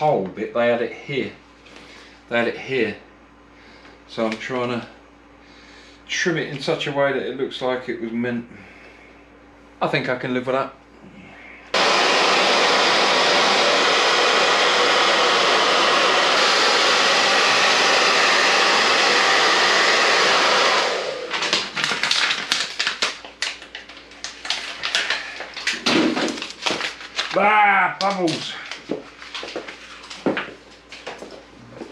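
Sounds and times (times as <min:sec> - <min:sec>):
hot-air blower running: 0:11.7 - 0:26.9.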